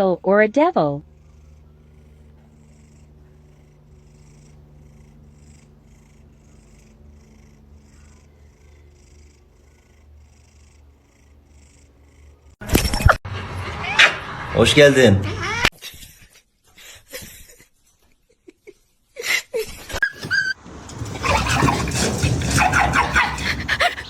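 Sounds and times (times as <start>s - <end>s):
cat purring: 0.0s - 12.6s.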